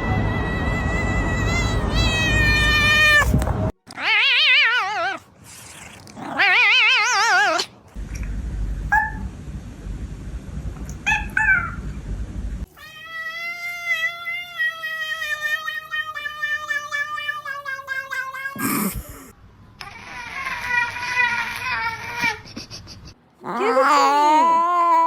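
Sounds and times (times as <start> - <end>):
cats meowing and yowling: 0.0 - 5.3, 6.2 - 7.7, 12.7 - 18.9, 23.4 - 25.0.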